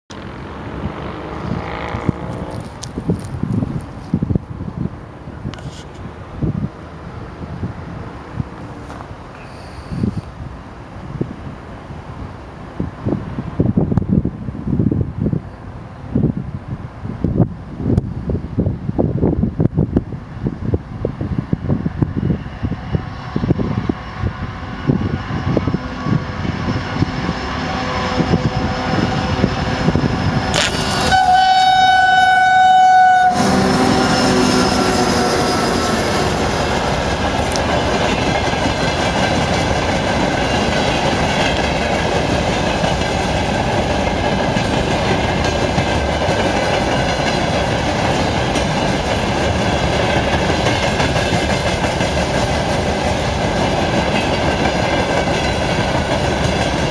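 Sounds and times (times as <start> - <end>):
locomotive rumble and rail clatter: 0.1 - 56.9
locomotive horn blast: 23.6 - 37.6
wheels clicking over rail joints: 30.2 - 31.5, 36.3 - 56.9.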